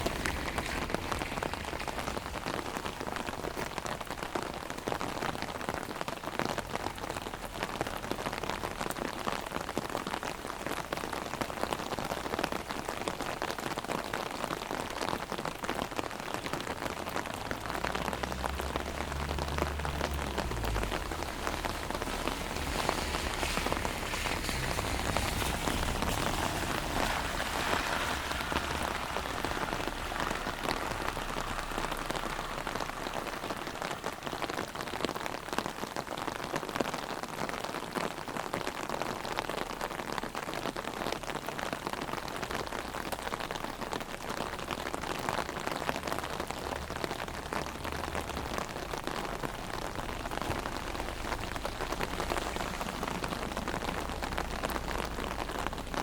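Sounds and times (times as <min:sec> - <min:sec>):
heavy rain on an umbrella: 0:00.0 - 0:56.0
low rumble: 0:17.0 - 0:35.0.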